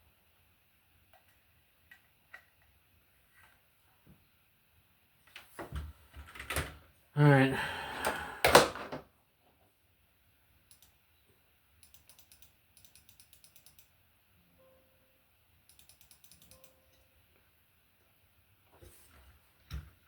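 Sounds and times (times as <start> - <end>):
faint rapid light clicks: 10.7 - 11.0, 11.8 - 13.9.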